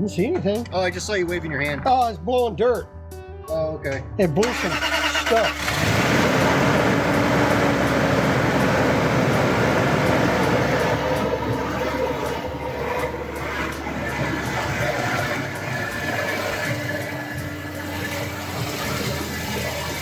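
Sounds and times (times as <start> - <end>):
car engine running: 4.4 - 20.0
cooling fan blowing hard: 4.5 - 20.0.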